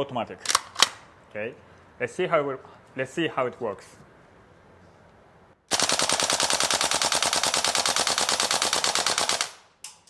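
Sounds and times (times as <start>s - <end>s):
rifle click: 0.4s - 1.0s
airsoft rifle full-auto burst: 5.7s - 9.7s.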